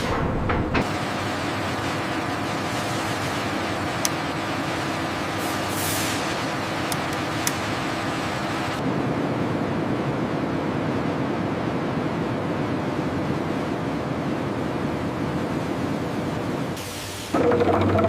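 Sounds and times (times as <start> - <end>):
machinery rushing noise: 17.3 - 18.0.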